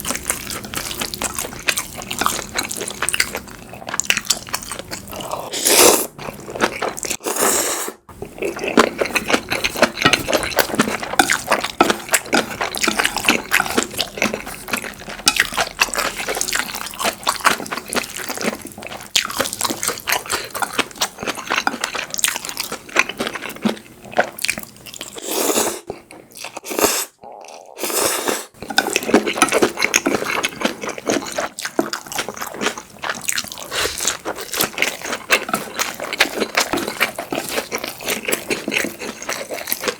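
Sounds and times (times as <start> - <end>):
wet chewing and smacking: 0.0 - 5.5, 8.2 - 25.2, 28.6 - 39.9.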